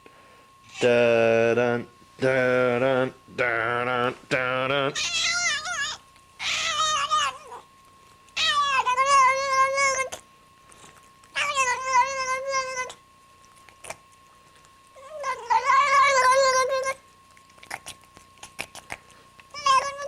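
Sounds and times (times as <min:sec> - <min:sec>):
faint steady tone: 0:00.0 - 0:20.0
cat yowling: 0:05.0 - 0:07.7, 0:08.4 - 0:10.2, 0:11.4 - 0:13.0, 0:15.0 - 0:17.0, 0:19.5 - 0:20.0.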